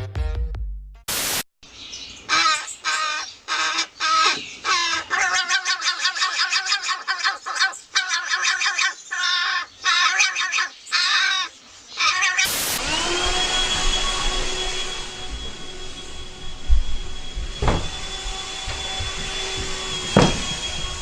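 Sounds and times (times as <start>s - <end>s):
bird harsh raspy calls: 1.9s - 12.8s.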